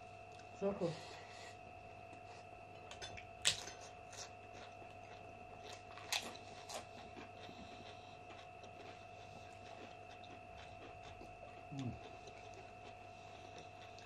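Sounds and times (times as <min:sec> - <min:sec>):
faint steady hum: 0:00.0 - 0:14.0
quiet chewing: 0:03.5 - 0:14.0.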